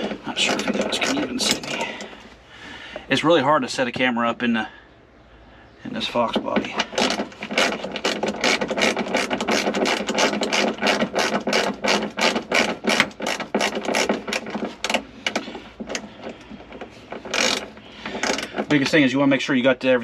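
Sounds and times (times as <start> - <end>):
ratchet wrench clicking: 6.8 - 15.4, 17.2 - 18.7.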